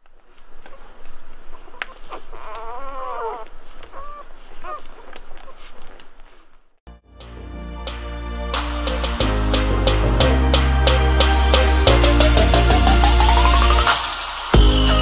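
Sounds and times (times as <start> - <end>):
puppies whining and squeaking: 1.5 - 5.9.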